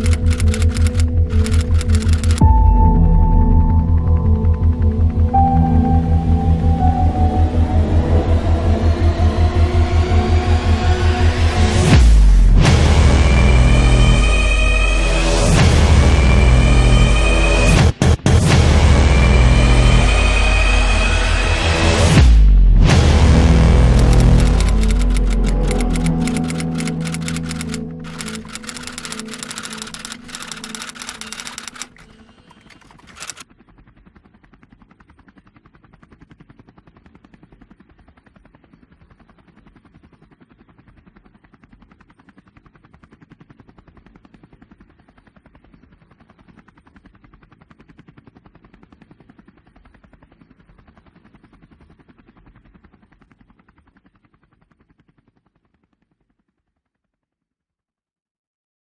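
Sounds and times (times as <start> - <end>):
rapid mechanical rattle: 0.0 - 2.4, 24.0 - 33.4
background music: 0.0 - 32.2.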